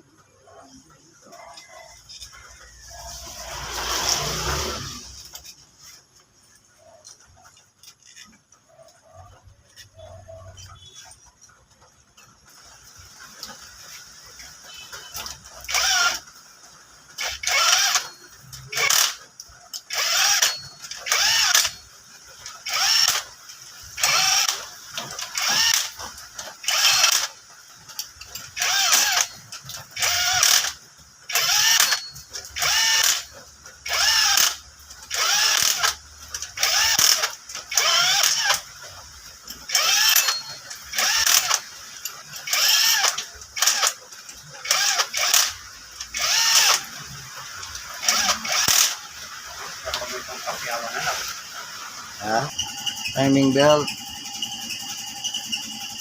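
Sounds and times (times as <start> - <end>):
ratchet wrench clicking: 15.1 - 16.2, 17.2 - 49.4.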